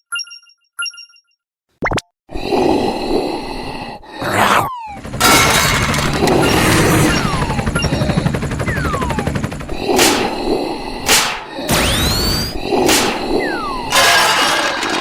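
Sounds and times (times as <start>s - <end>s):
fast rattling clatter: 5.0s - 9.8s
cartoon crash: 13.9s - 15.0s.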